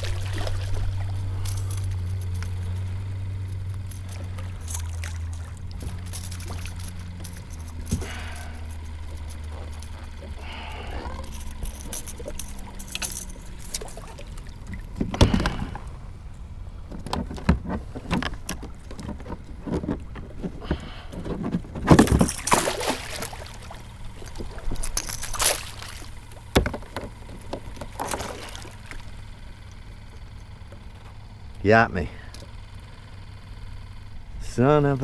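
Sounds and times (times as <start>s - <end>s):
water splashing: 0.0s - 15.8s, 21.9s - 26.6s, 27.6s - 29.4s
gear knocking and rattling: 0.0s - 34.0s
steady low rumble: 0.0s - 35.0s.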